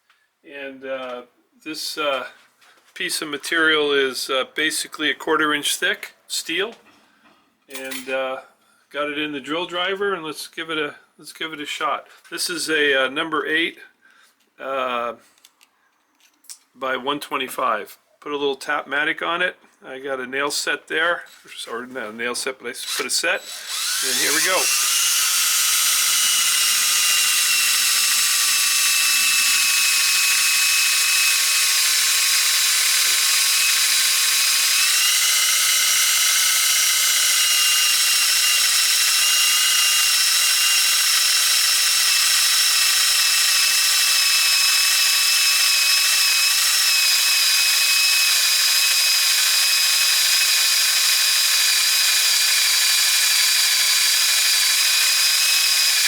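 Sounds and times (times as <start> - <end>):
drill whining into steel: 22.8 - 56.0.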